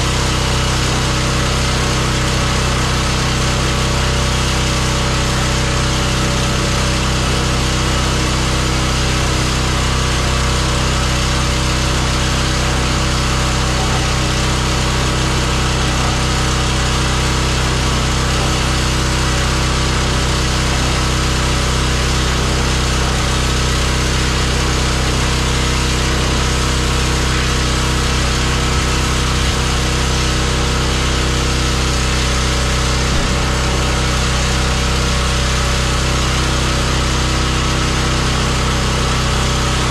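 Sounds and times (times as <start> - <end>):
pressure washer running: 0.0 - 39.9.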